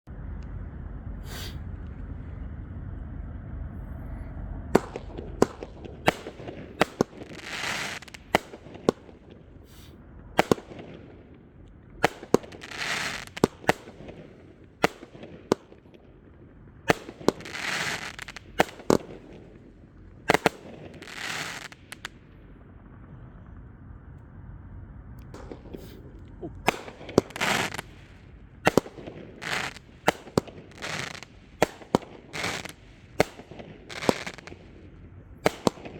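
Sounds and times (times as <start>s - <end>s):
firework bangs: 1.0s - 2.8s, 4.7s - 35.9s
hissing firework bursts: 1.2s - 1.7s, 4.8s - 11.1s, 12.0s - 15.9s, 16.8s - 19.6s, 20.2s - 22.1s, 25.4s - 35.9s.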